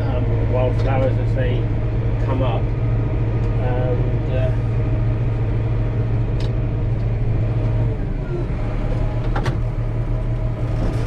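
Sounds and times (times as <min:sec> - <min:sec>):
tractor engine droning: 0:00.0 - 0:11.0.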